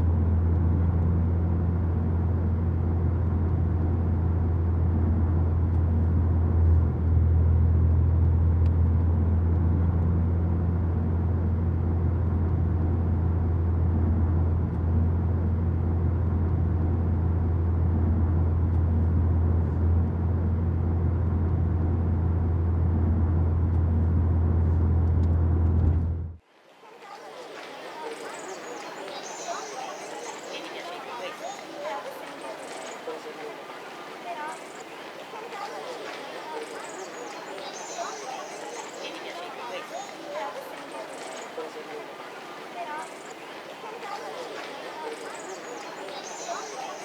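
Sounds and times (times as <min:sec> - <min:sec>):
low droning rumble: 0:00.0 - 0:26.4.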